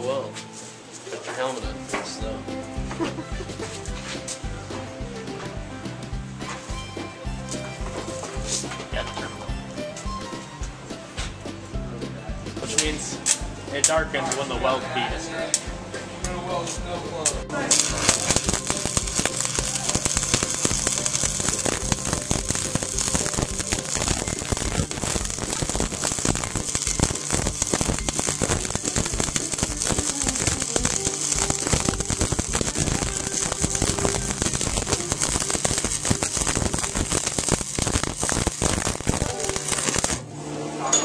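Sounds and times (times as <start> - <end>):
welding arc crackling and sizzling: 12.6 - 14.6, 17.2 - 40.2.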